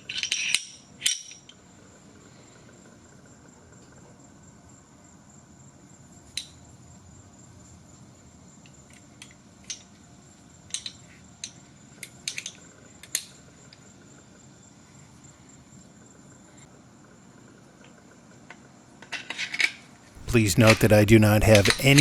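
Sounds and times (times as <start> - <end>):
pistol parts clicking: 20.2 - 22.0.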